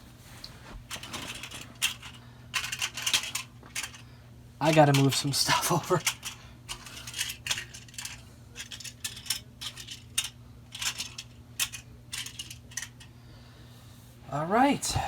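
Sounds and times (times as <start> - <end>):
steady low hum: 0.0 - 15.0
plastic toys clicking and clattering: 0.9 - 4.0, 4.6 - 13.1.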